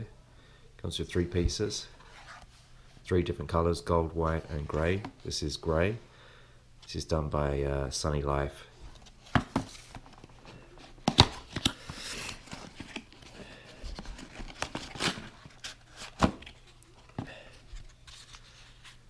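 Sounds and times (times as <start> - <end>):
packaging rustling: 9.0 - 19.0.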